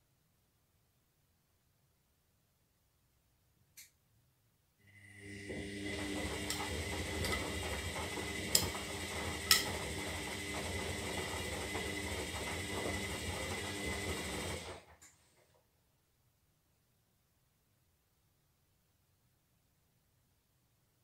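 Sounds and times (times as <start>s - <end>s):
washing machine motor humming: 4.9s - 15.0s.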